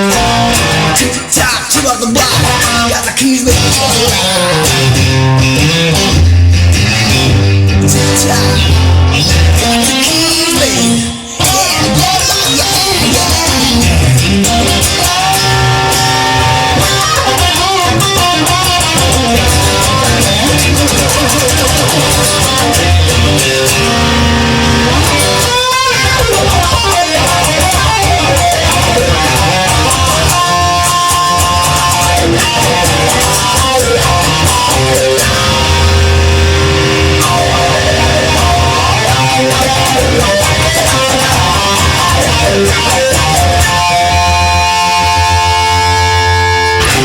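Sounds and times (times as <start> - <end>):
bass and drum beat: 0.0 - 2.9, 3.5 - 46.0
guitar playing held notes: 0.0 - 47.0
wavering pitch sweep: 13.7 - 47.0.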